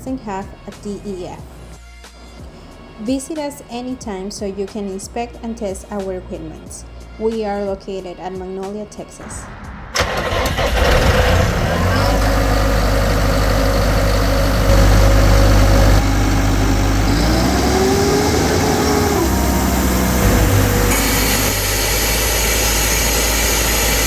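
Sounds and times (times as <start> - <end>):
diesel compressor engine running: 10.0 - 24.0.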